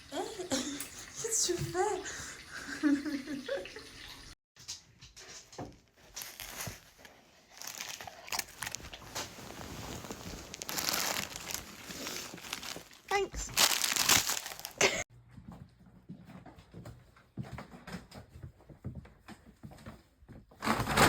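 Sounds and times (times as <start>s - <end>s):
packaging crinkling and tearing: 6.1s - 15.0s.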